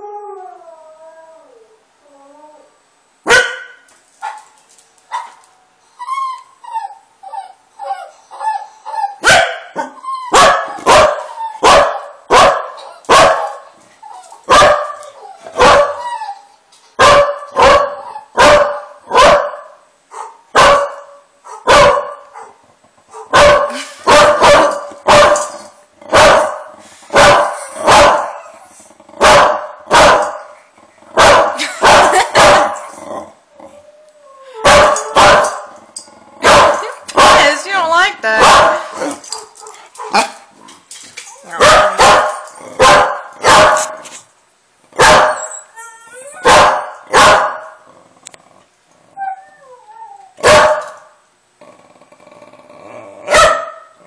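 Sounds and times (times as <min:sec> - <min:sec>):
dog barking angrily: 0:03.3 - 0:04.4, 0:09.2 - 0:13.7, 0:14.5 - 0:15.0, 0:15.6 - 0:16.0, 0:17.0 - 0:25.5, 0:26.1 - 0:28.4, 0:29.2 - 0:30.5, 0:31.2 - 0:32.8, 0:34.7 - 0:35.7, 0:36.4 - 0:37.5, 0:38.4 - 0:40.5, 0:41.6 - 0:44.1, 0:45.0 - 0:45.4, 0:46.4 - 0:47.8, 0:50.4 - 0:51.0, 0:53.3 - 0:53.9
dog whimpering: 0:06.0 - 0:09.2, 0:45.4 - 0:46.5, 0:49.1 - 0:50.4.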